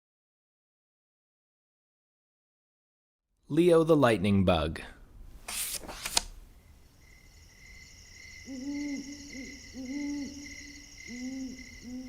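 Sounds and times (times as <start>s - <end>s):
sharp click: 5.5s - 6.4s
insects chirping: 5.6s - 12.0s
owl hooting: 7.0s - 12.0s.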